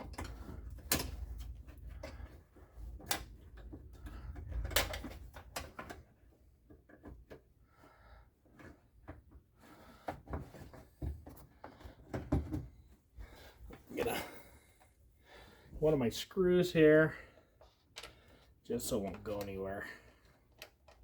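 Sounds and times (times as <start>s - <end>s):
clicks and knocks of hard parts: 0.0s - 7.5s.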